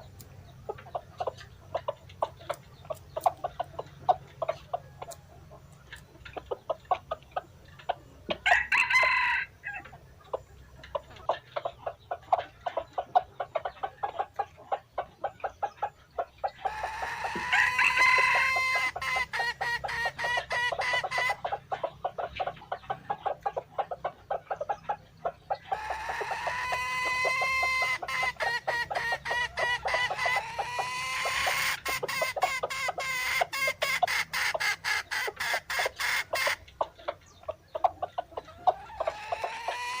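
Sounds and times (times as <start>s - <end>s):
chickens clucking: 0.0s - 40.0s
rooster crowing: 8.4s - 9.9s, 16.7s - 19.1s.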